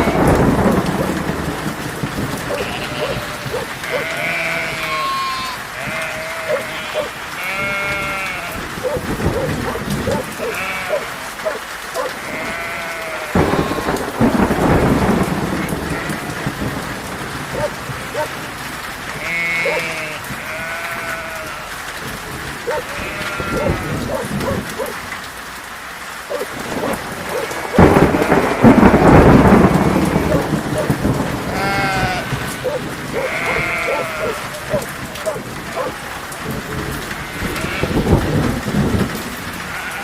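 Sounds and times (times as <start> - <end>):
sheep bleating: 0.0 - 0.4, 2.5 - 9.0, 10.1 - 14.2, 15.4 - 16.6, 19.1 - 21.8, 22.7 - 24.3, 27.3 - 38.4, 39.7 - 40.0
thunderclap rumbling: 0.0 - 25.3, 26.4 - 40.0
steady rain: 0.0 - 40.0.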